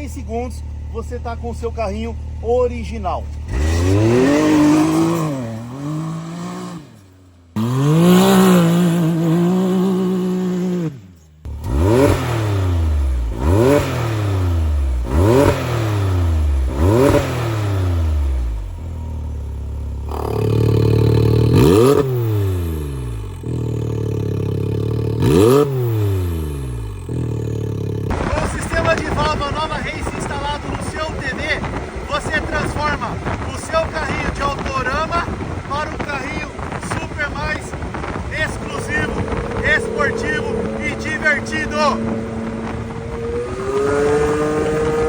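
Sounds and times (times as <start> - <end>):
engine revving: 0.0 - 45.0
quick throttle blips: 20.1 - 45.0.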